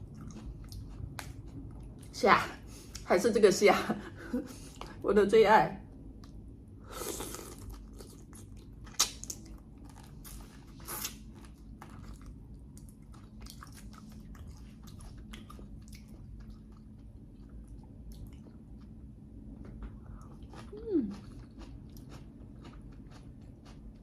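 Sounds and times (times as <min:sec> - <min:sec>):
wet chewing: 0:00.0 - 0:02.1, 0:07.1 - 0:19.0, 0:19.6 - 0:24.0.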